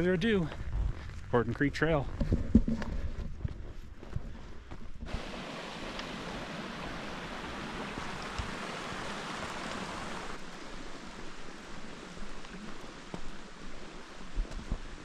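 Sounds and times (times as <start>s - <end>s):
creek water rushing over rocks: 5.1s - 15.0s.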